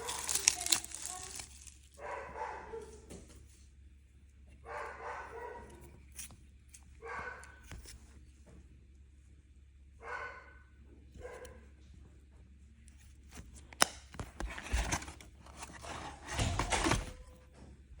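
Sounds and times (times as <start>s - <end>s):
rustling handling noise: 0.0s - 2.0s, 13.0s - 17.5s
dog barking: 2.0s - 3.1s, 4.6s - 5.9s, 7.0s - 7.7s, 10.0s - 11.7s.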